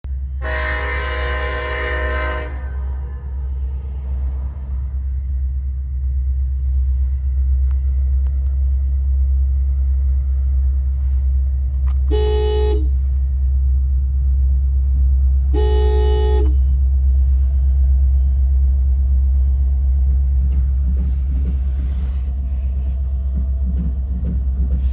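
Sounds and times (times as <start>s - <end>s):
low rumble: 0.0s - 24.9s
vehicle horn toots: 0.4s - 2.8s, 11.9s - 13.0s, 15.5s - 16.7s.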